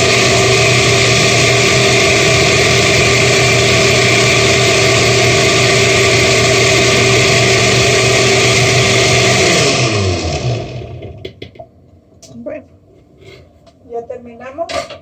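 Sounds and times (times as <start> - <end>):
blender motor running: 0.0 - 11.3.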